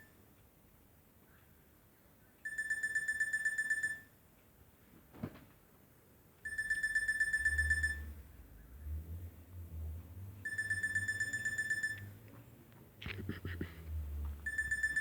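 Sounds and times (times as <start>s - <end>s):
beeping phone ringtone: 2.4s - 4.1s, 6.4s - 8.2s, 10.4s - 12.1s, 14.4s - 15.0s.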